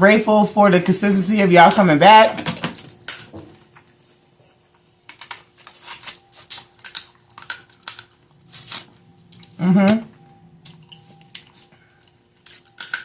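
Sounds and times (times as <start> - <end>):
shells cracking and peeling: 4.8 - 8.9, 11.3 - 13.0
chewing: 10.6 - 13.0.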